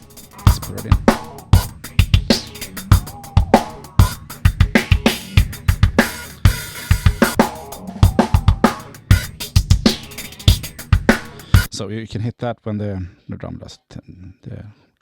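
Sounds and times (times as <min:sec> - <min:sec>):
drum kit playing a steady groove: 0:00.0 - 0:11.7.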